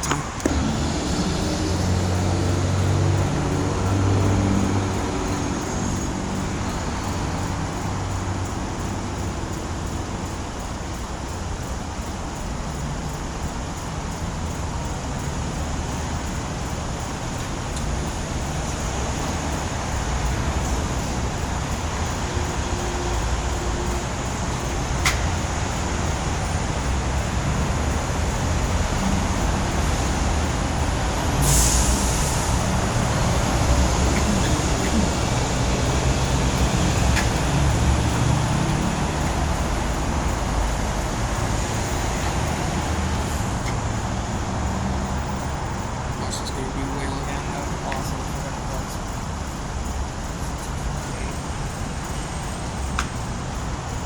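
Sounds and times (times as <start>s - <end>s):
sharp click: 0.0s - 1.2s
deep engine hum: 0.0s - 10.3s, 18.0s - 46.3s
vehicles passing: 0.0s - 54.0s.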